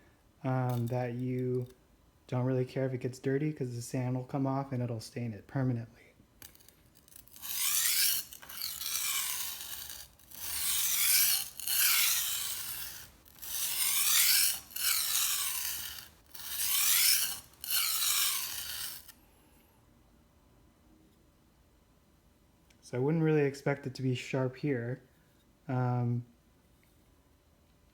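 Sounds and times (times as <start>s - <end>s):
knife scraping on whetstone: 0.7s - 0.9s, 6.4s - 19.2s.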